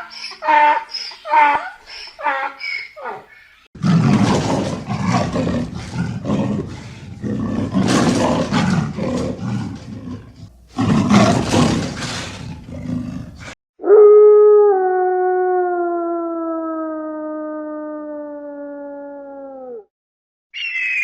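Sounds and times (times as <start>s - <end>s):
lion roaring: 3.8s - 13.6s.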